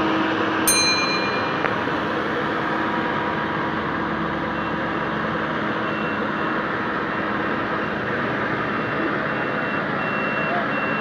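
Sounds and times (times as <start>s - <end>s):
combine harvester running: 0.0s - 11.0s
faint high reversing beeper: 0.7s - 2.8s, 5.7s - 11.0s.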